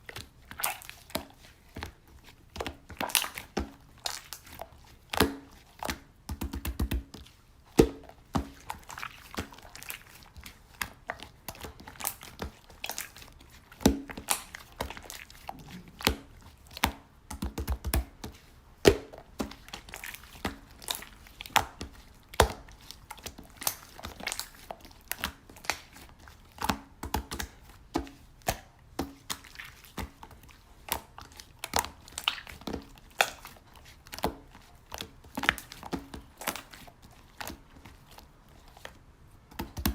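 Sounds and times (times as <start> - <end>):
slime squeezed by hand: 0.2 - 6.2, 18.0 - 39.0.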